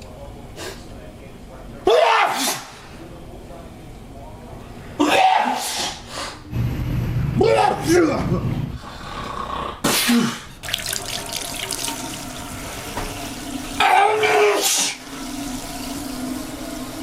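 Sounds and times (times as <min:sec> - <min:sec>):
loud water bursts: 0:10.6 - 0:12.8
tap water running into sink: 0:10.6 - 0:13.8.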